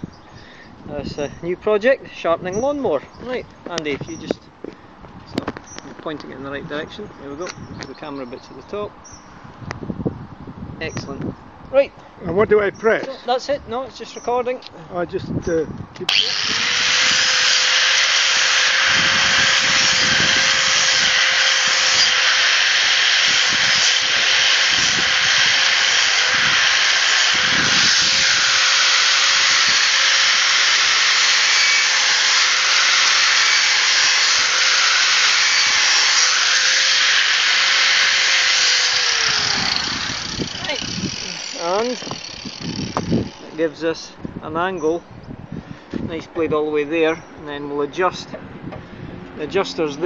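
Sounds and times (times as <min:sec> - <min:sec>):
grinder grinding a blade: 0:16.1 - 0:43.6.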